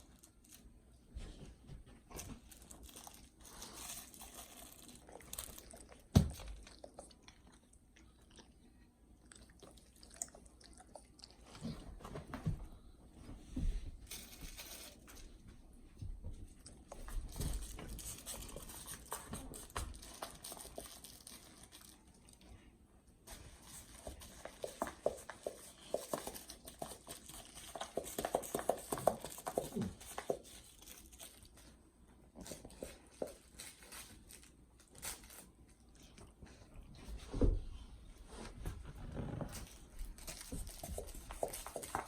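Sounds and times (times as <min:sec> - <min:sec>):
dog chewing crinkly toy: 0:00.0 - 0:00.8, 0:02.1 - 0:07.7, 0:16.7 - 0:22.7, 0:23.3 - 0:36.7, 0:39.4 - 0:42.0.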